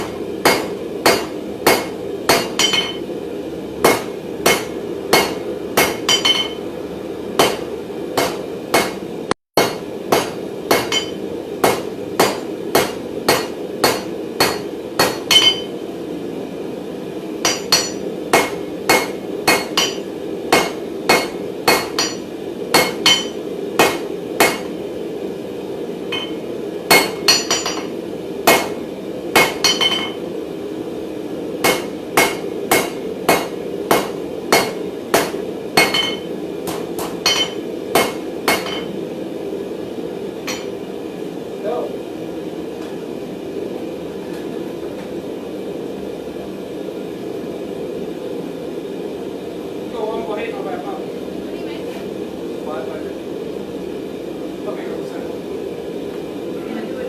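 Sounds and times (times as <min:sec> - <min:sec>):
hammer ringing on anvil: 0:00.4 - 0:03.1, 0:03.8 - 0:06.6, 0:09.6 - 0:15.7, 0:17.4 - 0:24.7, 0:26.1 - 0:27.9, 0:29.4 - 0:30.2, 0:31.6 - 0:36.3, 0:37.0 - 0:38.9, 0:40.5 - 0:40.7.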